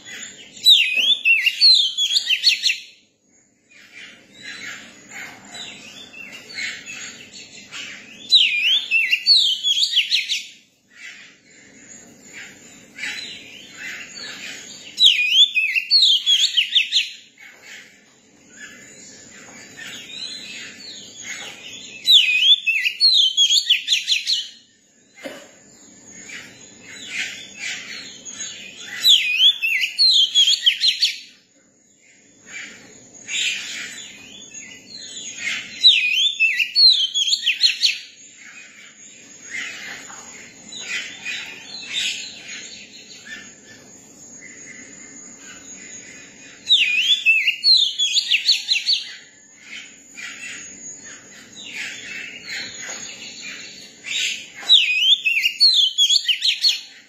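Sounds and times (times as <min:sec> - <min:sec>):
bird singing whistled phrases: 0:00.6 - 0:02.9, 0:08.2 - 0:10.5, 0:15.0 - 0:17.2, 0:22.0 - 0:24.5, 0:29.0 - 0:31.3, 0:35.8 - 0:38.1, 0:46.6 - 0:49.0, 0:54.1 - 0:56.8.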